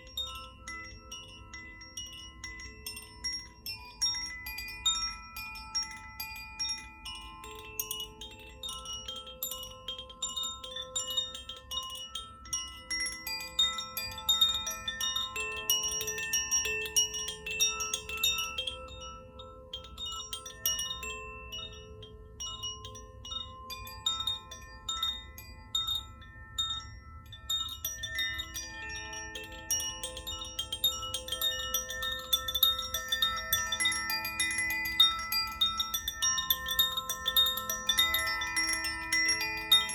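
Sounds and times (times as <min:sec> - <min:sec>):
chime rods ringing: 0:26.6 - 0:39.9.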